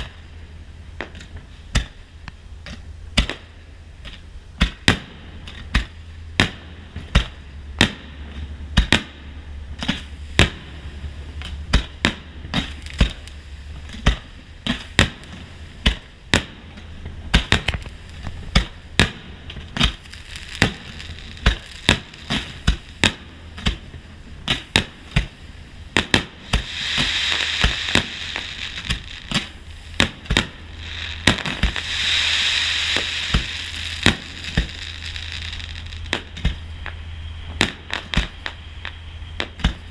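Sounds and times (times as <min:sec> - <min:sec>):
dense fireworks crackling: 0:00.0 - 0:39.9
fireworks shells bursting: 0:09.8 - 0:39.9.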